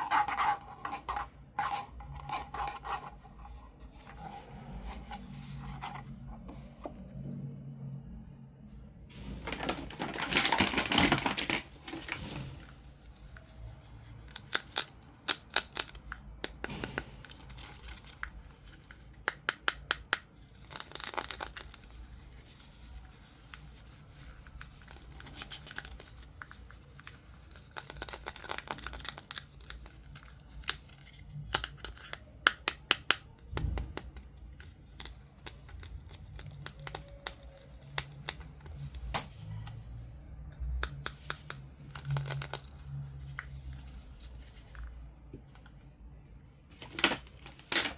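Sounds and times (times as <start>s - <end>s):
paper and plastic tearing: 9.4s - 12.8s, 46.8s - 47.9s.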